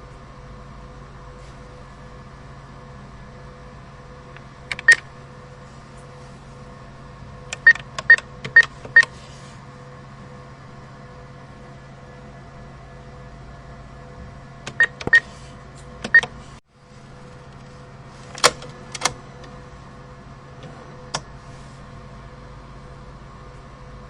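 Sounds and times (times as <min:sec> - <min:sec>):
cash machine mechanical hum: 0:00.0 - 0:24.0
machine clicks and beeps: 0:04.7 - 0:05.1, 0:07.5 - 0:09.1, 0:14.7 - 0:15.3, 0:16.0 - 0:16.3.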